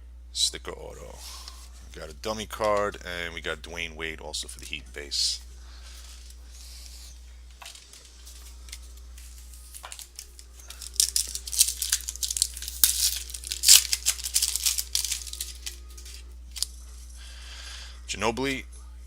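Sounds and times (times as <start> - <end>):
wrapper tearing and crinkling: 7.7 - 16.7.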